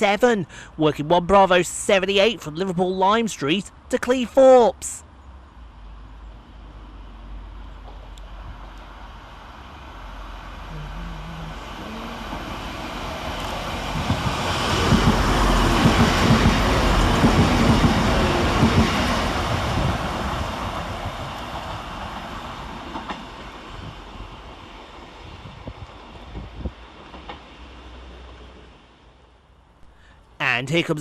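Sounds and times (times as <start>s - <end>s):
diesel train passing: 5.1s - 29.9s
wheels clicking over rail joints: 12.2s - 23.6s, 26.3s - 28.5s.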